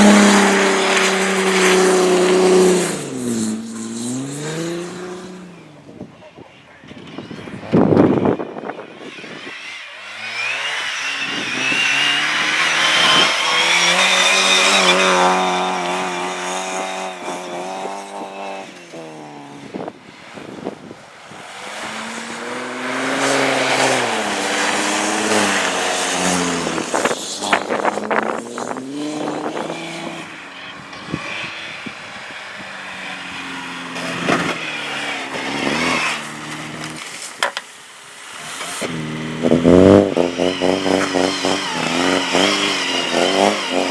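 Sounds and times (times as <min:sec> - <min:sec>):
tyres squealing: 0:00.0 - 0:05.7
car engine revving hard: 0:00.0 - 0:05.9, 0:09.1 - 0:37.3, 0:38.3 - 0:43.9.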